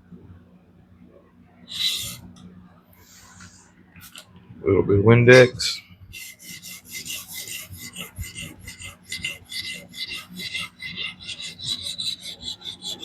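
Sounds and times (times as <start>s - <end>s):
sharpening plate rasping on knife edge: 6.2s - 13.0s.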